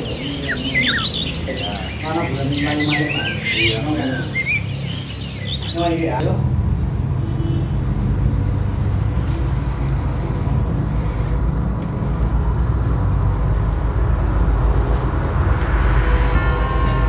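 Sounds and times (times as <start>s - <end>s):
heavy low rumble: 6.2s - 17.0s.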